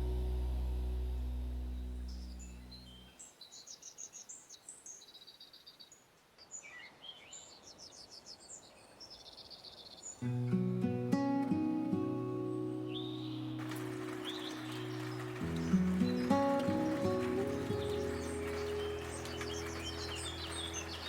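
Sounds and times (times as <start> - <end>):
songbirds chirping: 0.0 - 21.0
acoustic guitar music: 10.2 - 21.0.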